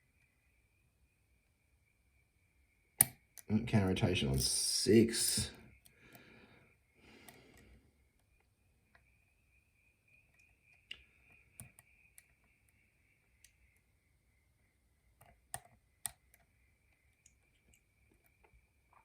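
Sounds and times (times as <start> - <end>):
lock pick clicking: 3.0 - 3.5.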